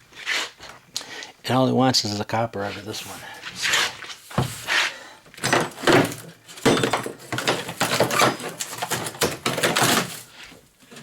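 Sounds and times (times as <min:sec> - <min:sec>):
scrap metal scraping and clattering: 0:02.8 - 0:11.0.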